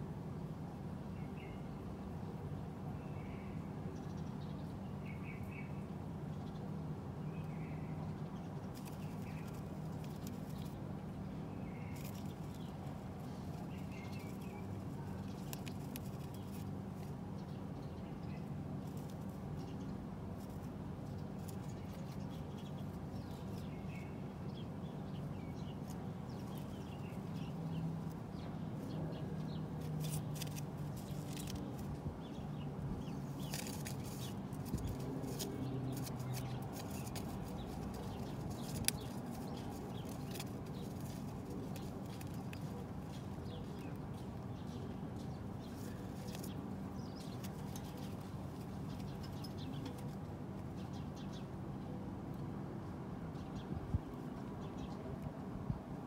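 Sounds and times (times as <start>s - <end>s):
feet and beaks scratching: 7.3s - 51.6s.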